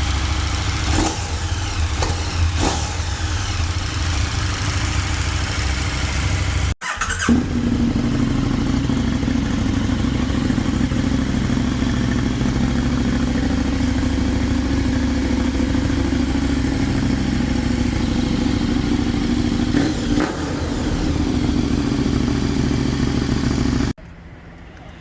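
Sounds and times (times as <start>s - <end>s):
motorcycle engine idling: 0.0s - 24.0s.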